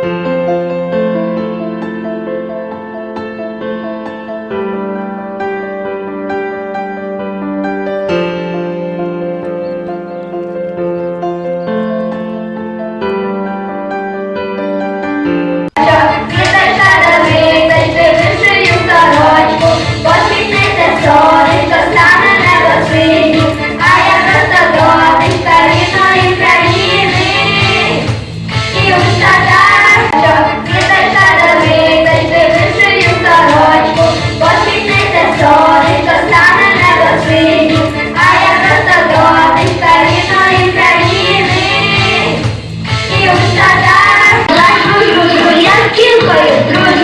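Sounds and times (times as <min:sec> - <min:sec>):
musical accompaniment with beat: 0:15.7 - 0:47.0
high voices singing: 0:15.8 - 0:47.0.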